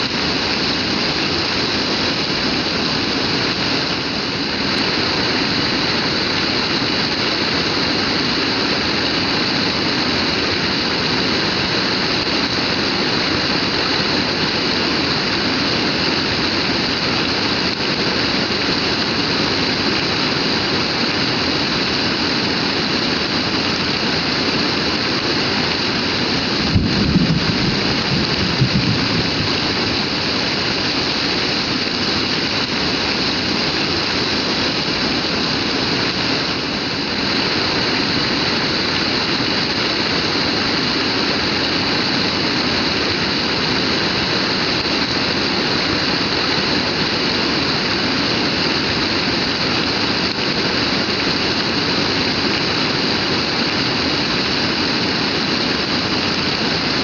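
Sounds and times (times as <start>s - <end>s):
heavy rain pouring: 0.0s - 57.0s.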